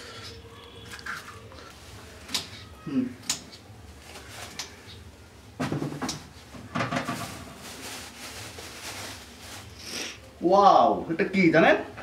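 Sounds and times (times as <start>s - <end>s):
kitchen things clattering: 5.6s - 8.1s.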